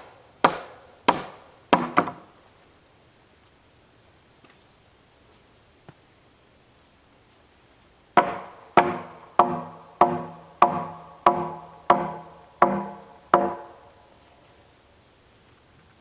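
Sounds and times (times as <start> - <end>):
hammer knocking on wood: 0.0 - 2.2, 8.2 - 13.8.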